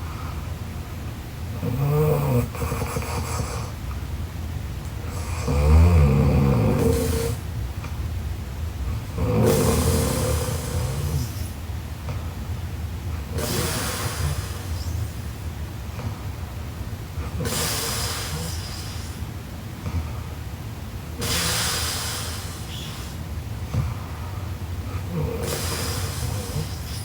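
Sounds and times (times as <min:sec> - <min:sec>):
woman snoring: 0:01.6 - 0:03.7, 0:05.1 - 0:07.4, 0:09.1 - 0:11.5, 0:13.3 - 0:15.2, 0:17.2 - 0:19.2, 0:25.0 - 0:27.0
breathy exhale: 0:13.4 - 0:15.4, 0:17.3 - 0:20.3, 0:21.2 - 0:27.0.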